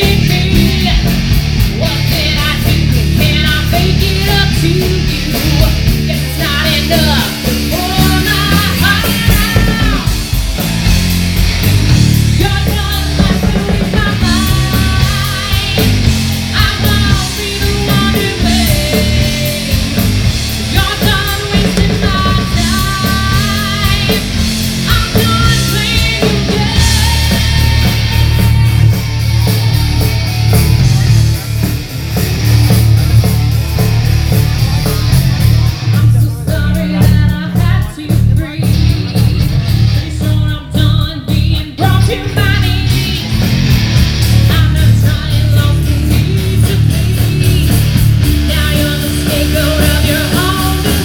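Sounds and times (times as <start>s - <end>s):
lead vocalist singing: 0.0s - 10.3s, 12.3s - 29.6s, 44.4s - 51.0s
bass: 0.0s - 51.0s
distorted guitars: 0.0s - 51.0s
drums with cymbal hits: 0.0s - 51.0s.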